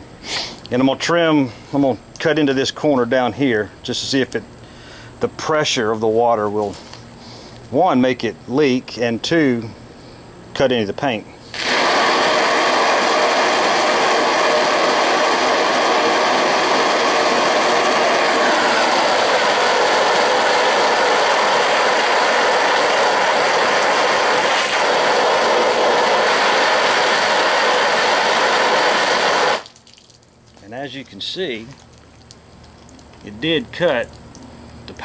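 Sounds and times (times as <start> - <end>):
water jet blasting onto tarp: 11.4 - 33.6.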